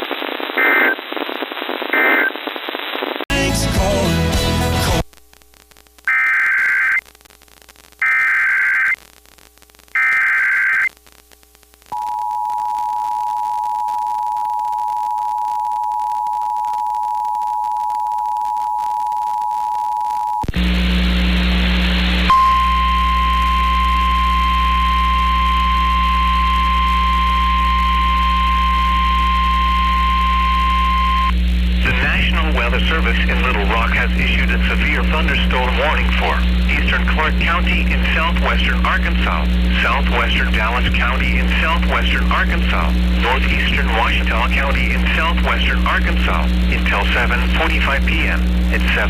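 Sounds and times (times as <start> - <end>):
radio hiss and low hum: 0.0 - 4.0, 4.9 - 49.0
screeching data bursts: 6.1 - 7.0, 8.0 - 9.0, 10.0 - 10.9.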